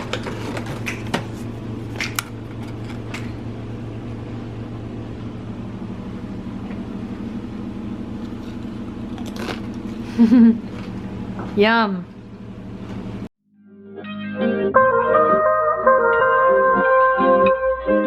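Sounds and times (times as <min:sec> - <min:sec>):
low mechanical hum: 0:00.0 - 0:13.3.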